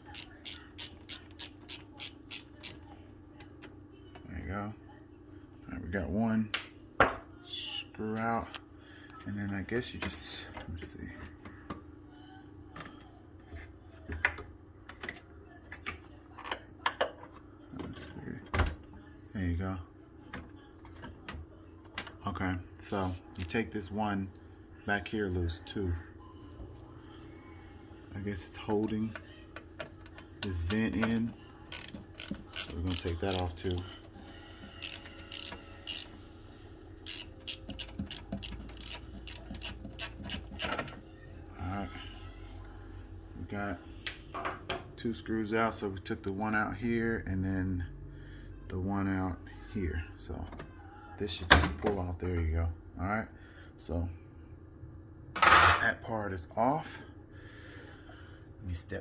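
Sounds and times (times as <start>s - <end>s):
screwdriver clicking on metal parts: 30.0s - 33.8s, 34.8s - 36.1s, 37.0s - 40.8s.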